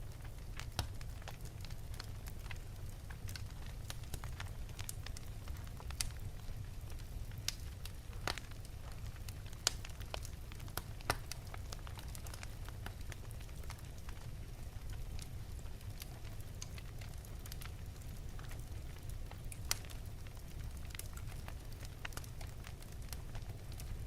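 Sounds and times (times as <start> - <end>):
fire crackling and popping: 0.0 - 24.0
fire low rumble: 0.0 - 24.0.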